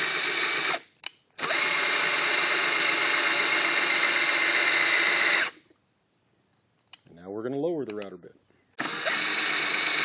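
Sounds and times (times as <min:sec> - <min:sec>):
power drill spinning: 0:00.0 - 0:05.7, 0:08.8 - 0:10.0.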